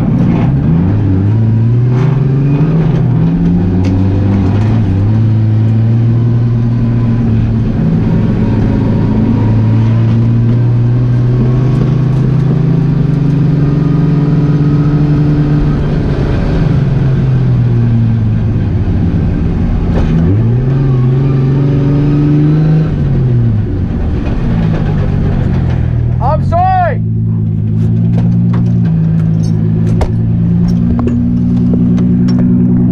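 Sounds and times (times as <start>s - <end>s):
car engines revving high: 0.0s - 32.9s.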